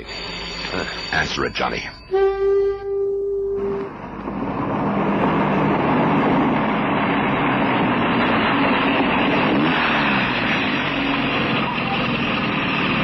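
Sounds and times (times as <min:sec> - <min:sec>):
motor vehicle engine running: 0:03.0 - 0:13.0.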